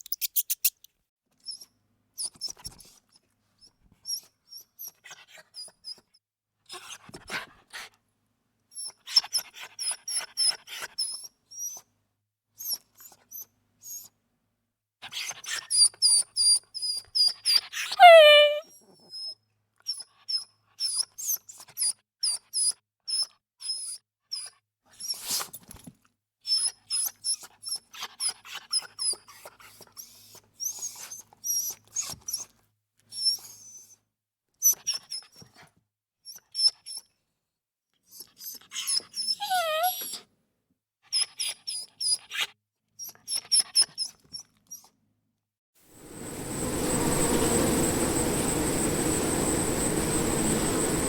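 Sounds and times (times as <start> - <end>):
small animal squeaking: 0.0 - 0.8, 18.0 - 18.6, 38.4 - 40.2
falling whine: 46.0 - 51.0.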